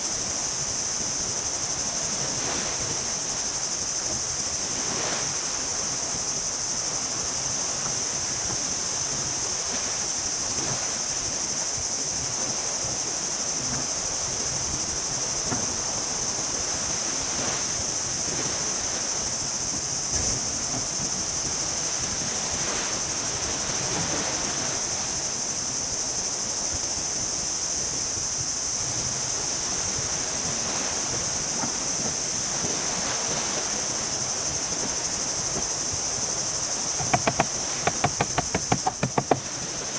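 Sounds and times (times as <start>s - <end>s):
high-pitched insect chorus: 24.4s - 39.9s
surf washing ashore: 29.5s - 39.9s
light knock: 37.0s - 39.5s.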